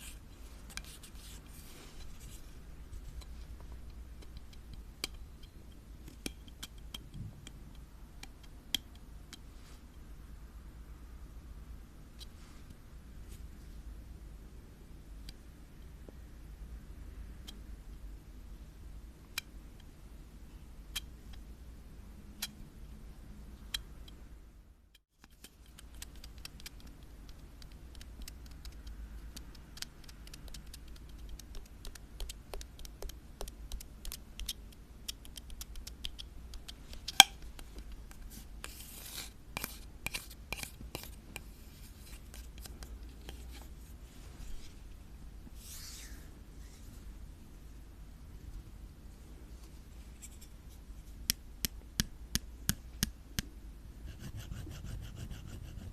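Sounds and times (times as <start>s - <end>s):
steady low hum: 0.0s - 55.9s
scratchy strokes: 38.1s - 44.8s, 45.6s - 47.0s.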